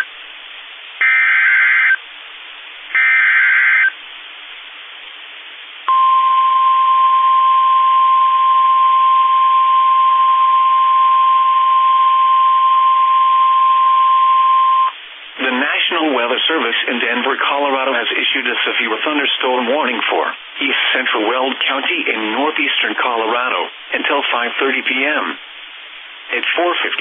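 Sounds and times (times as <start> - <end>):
steady warning alarm tone: 1.0 - 2.0, 3.0 - 3.9
warbling data tones: 1.0 - 2.0.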